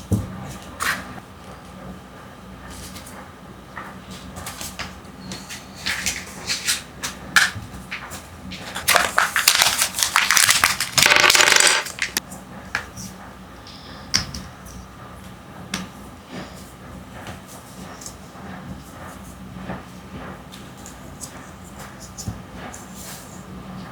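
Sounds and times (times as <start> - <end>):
wrapper crinkling: 8.6 - 12.2.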